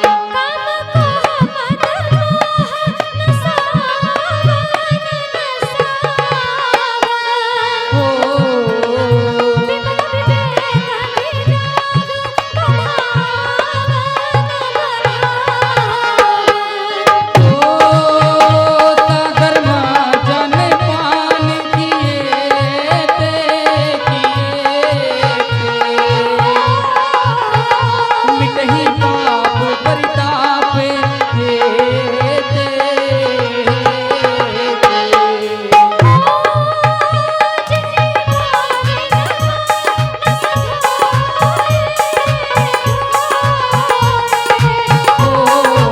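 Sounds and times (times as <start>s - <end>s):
hand drum steady rhythm: 8.0s - 16.5s, 17.1s - 32.1s, 34.9s - 45.9s.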